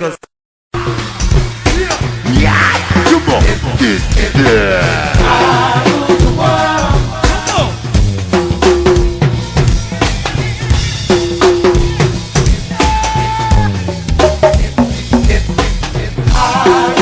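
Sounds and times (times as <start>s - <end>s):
rapped vocals: 0.8s - 8.2s, 11.4s - 17.0s
hip-hop drum beat: 0.8s - 17.0s.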